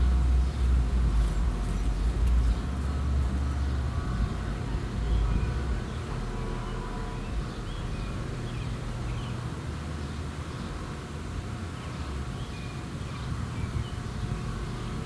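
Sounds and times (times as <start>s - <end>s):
low rumble: 0.0s - 10.0s
birds chirping: 0.2s - 15.0s.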